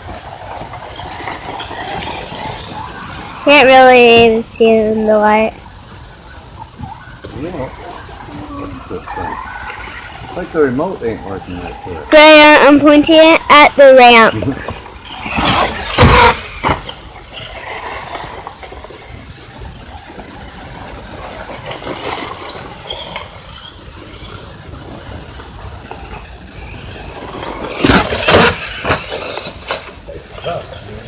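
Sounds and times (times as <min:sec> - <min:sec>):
toy car motor and gears: 0:00.0 - 0:31.0.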